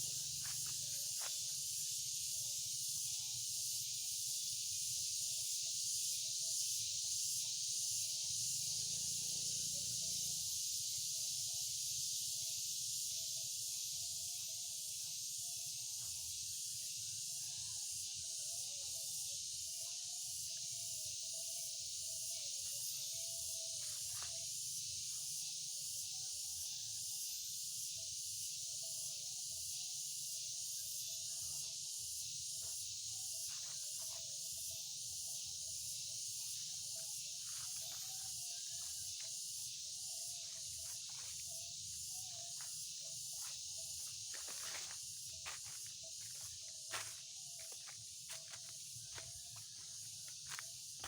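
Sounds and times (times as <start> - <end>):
high-pitched hissing drone: 28.4 - 51.0.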